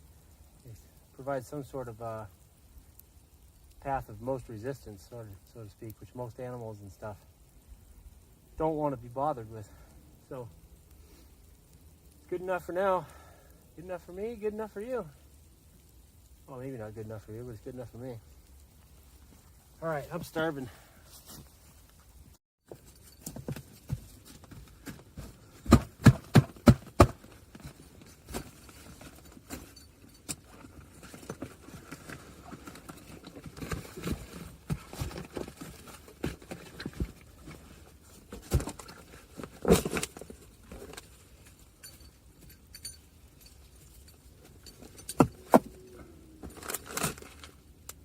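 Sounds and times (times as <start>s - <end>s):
clicks and rustles: 21.2s - 48.0s.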